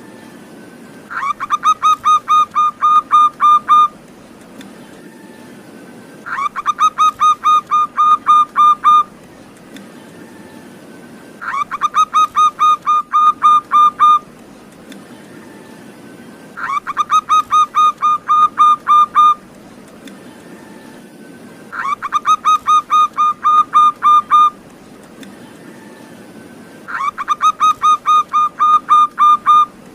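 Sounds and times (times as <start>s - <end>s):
dove cooing rhythmically: 1.1s - 4.0s, 6.2s - 9.2s, 11.4s - 14.4s, 16.6s - 19.5s, 21.7s - 24.7s, 26.8s - 29.9s.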